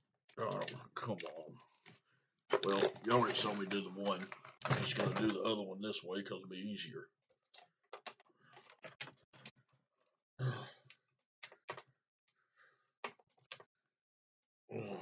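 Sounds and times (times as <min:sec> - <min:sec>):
plastic packaging rustling: 0:02.5 - 0:05.4
person sighing: 0:10.4 - 0:10.8, 0:14.7 - 0:15.0.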